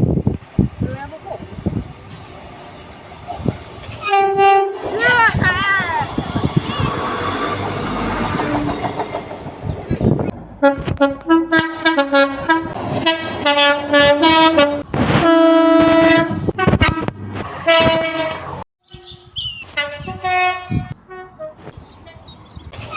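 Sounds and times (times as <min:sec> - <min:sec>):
train air horns blasting: 0:03.9 - 0:04.9, 0:10.6 - 0:18.6, 0:19.6 - 0:22.3
higher-pitched horn blasts: 0:04.0 - 0:04.9, 0:10.6 - 0:22.3.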